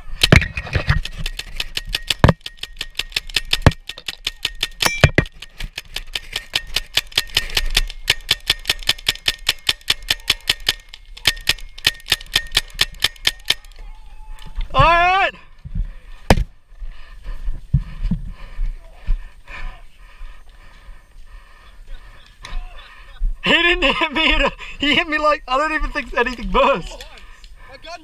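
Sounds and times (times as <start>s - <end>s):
paintball marker firing rapidly: 0.2s - 13.6s.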